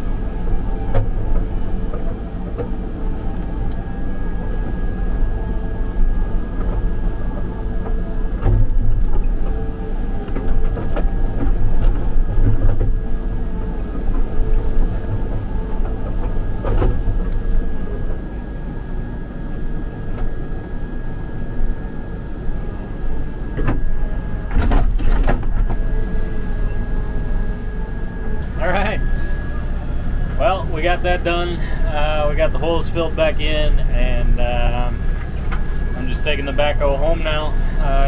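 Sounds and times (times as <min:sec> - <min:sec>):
backhoe engine running: 0:00.0 - 0:38.0
high steady whine: 0:00.0 - 0:38.0.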